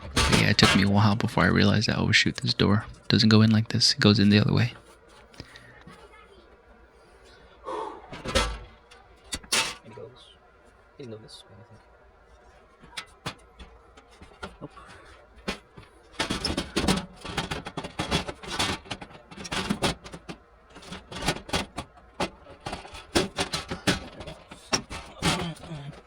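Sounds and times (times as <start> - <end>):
metal access door rattling: 0.0 - 1.8, 8.1 - 9.8.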